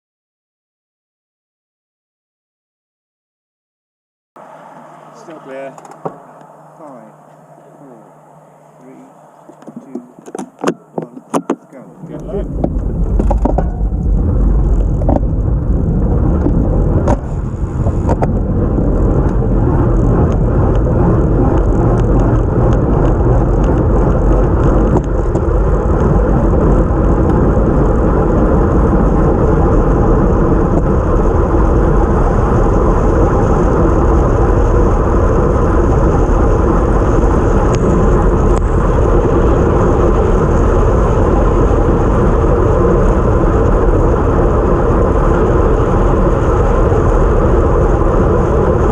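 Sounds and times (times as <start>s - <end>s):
wind rush: 4.4s - 48.9s
sharp clicks and knocks: 5.7s - 6.2s, 9.5s - 11.7s, 12.5s - 13.9s
tyre noise on wet road: 12.1s - 48.9s.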